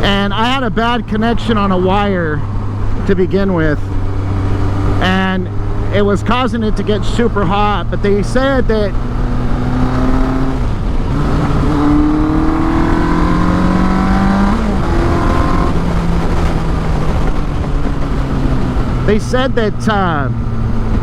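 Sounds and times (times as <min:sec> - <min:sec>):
motorcycle engine revving: 0:00.0 - 0:21.0
wind rush: 0:00.0 - 0:21.0.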